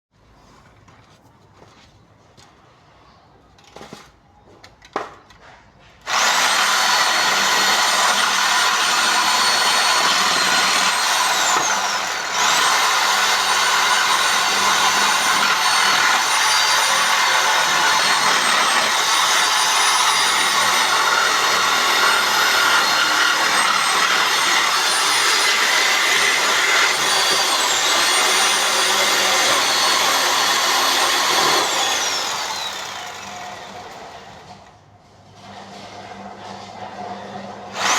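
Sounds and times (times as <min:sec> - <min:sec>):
reciprocating saw cutting wood: 0:06.0 - 0:34.3.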